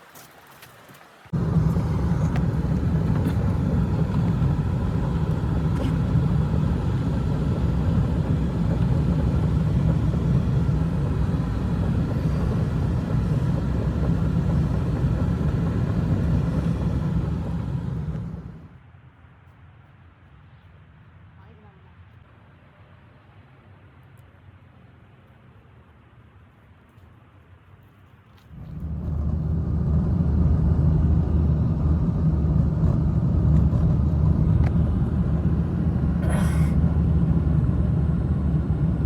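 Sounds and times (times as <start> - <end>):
loud low rumble: 1.4 - 18.7, 28.6 - 39.0.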